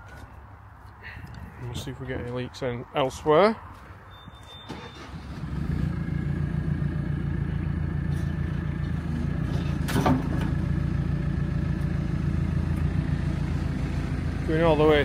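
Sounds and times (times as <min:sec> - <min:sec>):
diesel engine running: 0:04.6 - 0:15.0.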